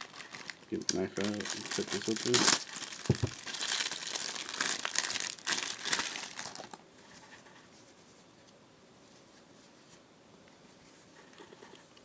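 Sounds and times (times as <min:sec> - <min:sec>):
packaging crinkling and tearing: 0:00.0 - 0:06.8.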